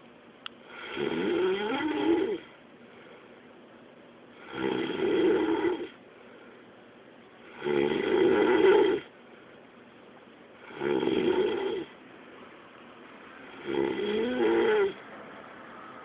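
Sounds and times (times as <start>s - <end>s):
loud snoring: 0.7s - 2.5s, 4.4s - 6.0s, 7.5s - 9.1s, 10.6s - 12.0s, 13.4s - 15.0s
quiet breathing: 2.4s - 3.6s, 5.7s - 7.6s, 9.0s - 9.8s.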